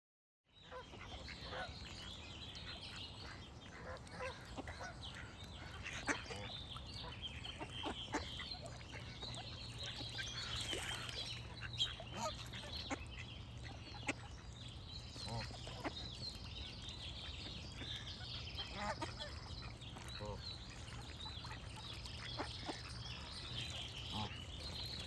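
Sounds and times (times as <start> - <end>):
small birds singing: 0.5 - 25.0
ducks quacking: 3.2 - 14.3, 17.8 - 23.0, 24.1 - 24.4.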